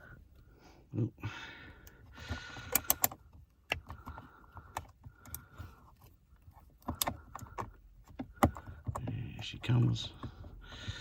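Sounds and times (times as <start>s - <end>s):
hand tool clicking: 2.6s - 3.9s.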